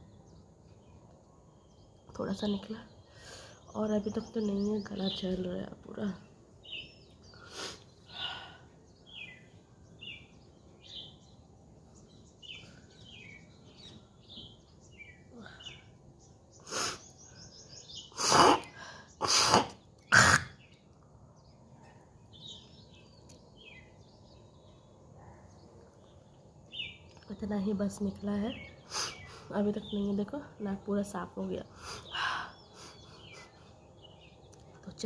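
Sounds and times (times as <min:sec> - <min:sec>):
birds chirping: 0:00.0 - 0:35.0
woman hawking phlegm: 0:18.2 - 0:20.6.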